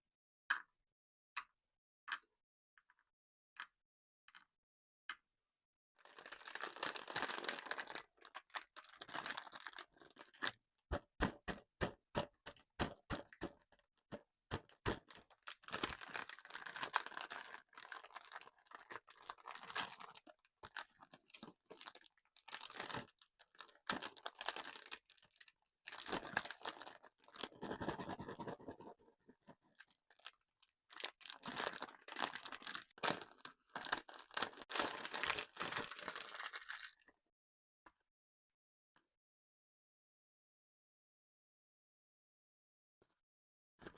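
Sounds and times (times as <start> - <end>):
candy crunching: 6.0 - 10.6, 14.5 - 28.8, 29.7 - 37.0.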